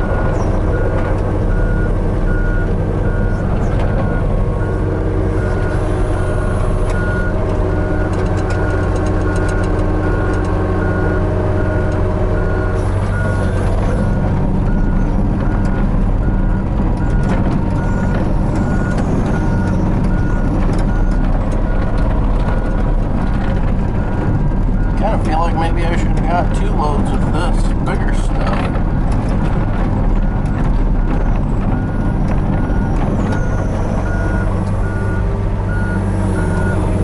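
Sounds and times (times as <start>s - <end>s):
travel alarm beeping: 0.0s - 22.8s, 31.8s - 37.0s
excavator diesel engine humming: 0.0s - 37.0s
sharp clicks and clanks: 6.9s - 10.6s.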